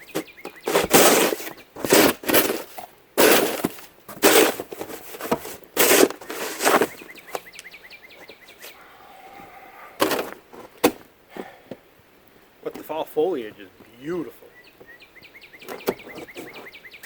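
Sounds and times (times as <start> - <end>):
snow crunching: 0.0 - 7.3, 9.5 - 11.6.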